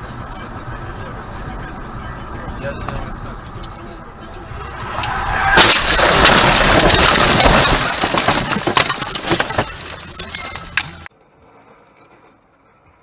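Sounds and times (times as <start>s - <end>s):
vehicle crash impact: 4.6s - 11.1s
breaking glass clinks: 5.6s - 11.1s.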